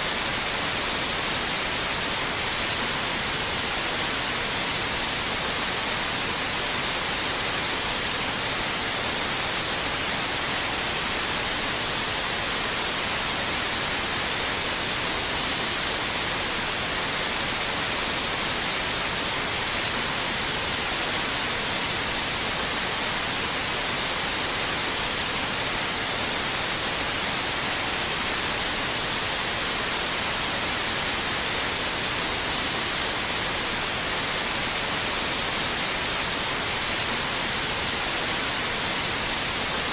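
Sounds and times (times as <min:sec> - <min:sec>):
steady white noise hiss: 0:00.0 - 0:39.9.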